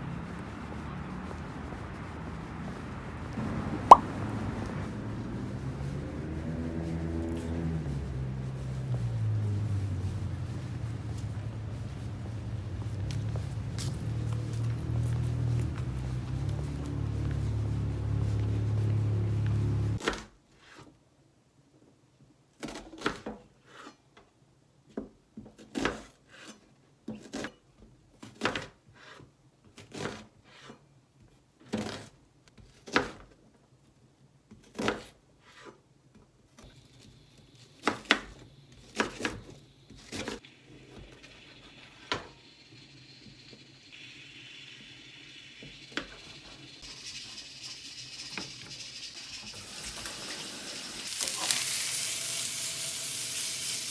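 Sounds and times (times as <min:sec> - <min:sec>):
pan sizzling: 0:40.5 - 0:53.9.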